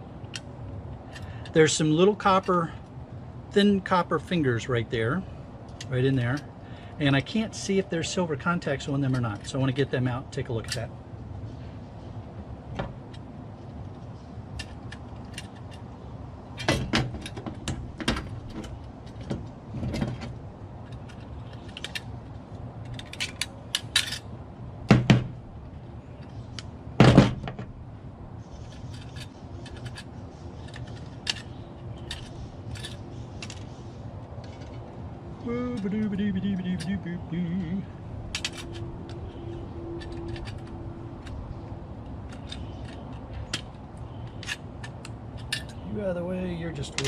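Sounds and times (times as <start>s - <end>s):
small parts clicking and rattling: 0.2s - 1.6s, 13.0s - 24.3s, 28.4s - 35.0s, 38.2s - 45.8s.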